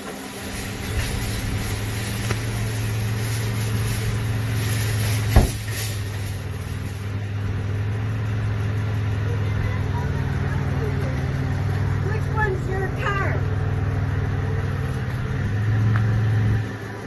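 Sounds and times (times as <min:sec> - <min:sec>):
car engine running: 0:00.0 - 0:17.0
sharp knock: 0:05.4 - 0:05.6.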